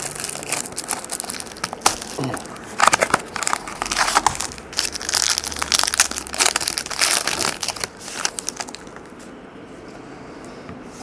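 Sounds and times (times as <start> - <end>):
wrapper crinkling and tearing: 0.0 - 9.0.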